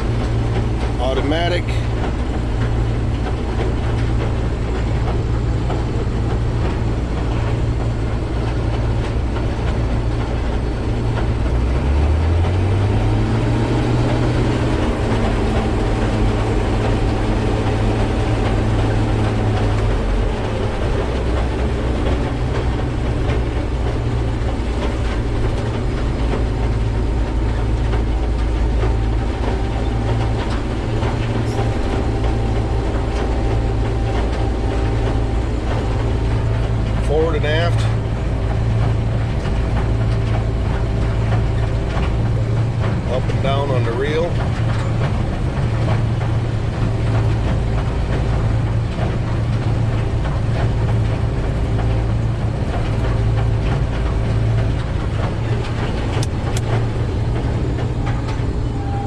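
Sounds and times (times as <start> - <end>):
combine harvester droning: 0.0 - 59.0
low hum rising in pitch: 0.0 - 59.0.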